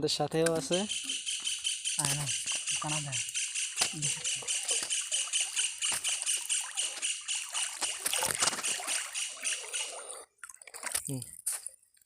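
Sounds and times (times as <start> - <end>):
pond water splashing: 0.4 - 12.0
pulsing insect chorus: 0.6 - 7.9.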